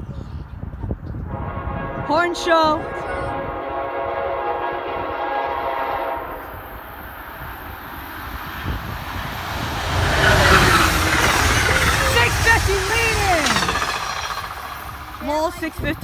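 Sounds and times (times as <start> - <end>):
train horn chord: 1.3 - 6.5
train rushing past: 1.3 - 16.0.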